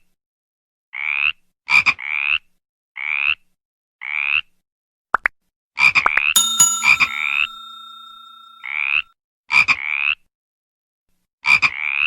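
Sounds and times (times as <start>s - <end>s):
ringing tone: 6.4s - 8.8s.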